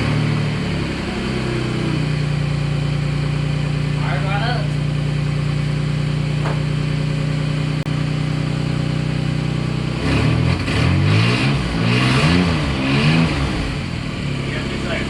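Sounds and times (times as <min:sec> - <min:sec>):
car engine idling and revving: 0:00.0 - 0:15.0.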